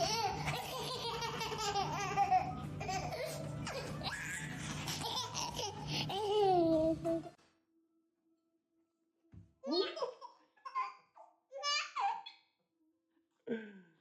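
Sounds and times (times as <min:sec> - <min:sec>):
baby laughing: 0:00.0 - 0:07.3, 0:09.9 - 0:12.4.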